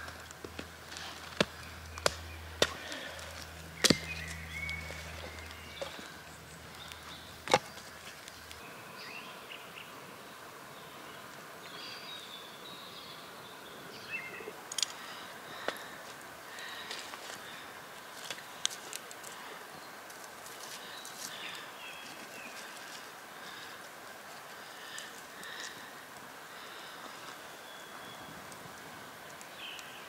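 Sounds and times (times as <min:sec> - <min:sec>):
low hum: 0:00.0 - 0:07.9
campfire wood cracking: 0:00.0 - 0:08.6, 0:14.6 - 0:27.5, 0:28.4 - 0:30.0.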